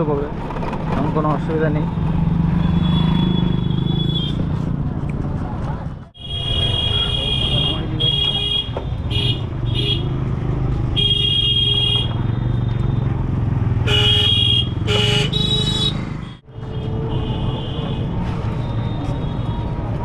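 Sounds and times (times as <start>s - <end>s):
engine and road rumble: 0.0s - 20.0s
vehicle horns honking: 6.2s - 10.2s, 10.9s - 12.4s, 13.8s - 18.2s.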